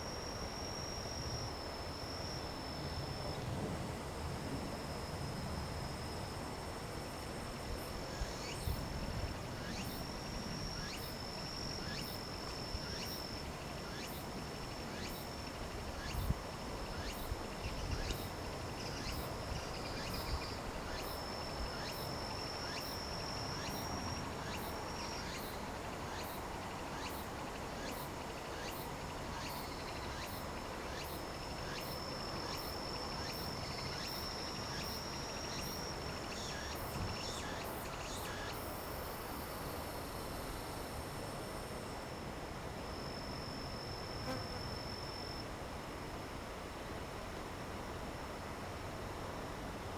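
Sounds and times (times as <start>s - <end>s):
insect high chirping: 8.0s - 41.9s
insect high trill: 9.5s - 17.3s, 18.0s - 26.4s.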